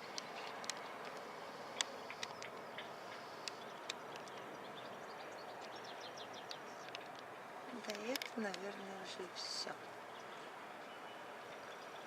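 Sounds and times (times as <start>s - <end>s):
steady distant hum: 0.0s - 12.0s.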